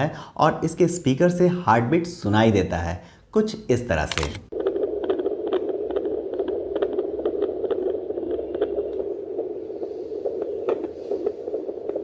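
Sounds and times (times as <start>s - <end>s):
steady hiss: 3.2s - 12.0s
fast fetal heartbeat from doppler: 4.5s - 12.0s.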